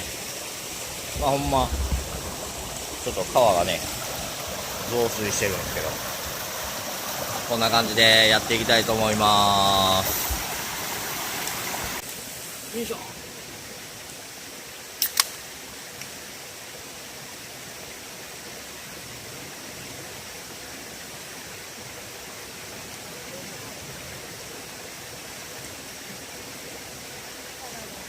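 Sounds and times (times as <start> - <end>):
stream rushing: 0.0 - 28.0
sharp clicks: 15.0 - 15.4.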